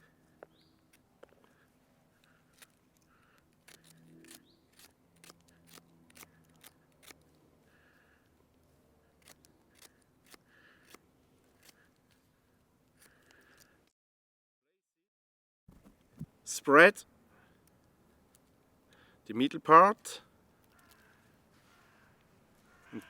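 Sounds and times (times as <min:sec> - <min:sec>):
knife blade snapping through sticks: 0:03.6 - 0:07.2.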